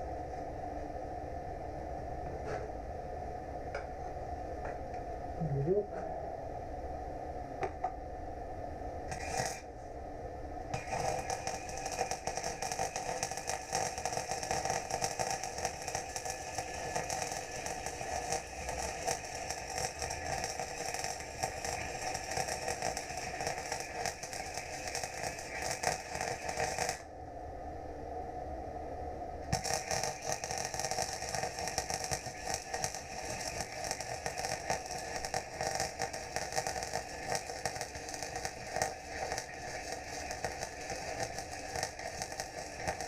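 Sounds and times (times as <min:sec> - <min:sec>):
welder arc crackling: 0:09.1 - 0:09.7, 0:10.7 - 0:27.1, 0:29.5 - 0:43.0.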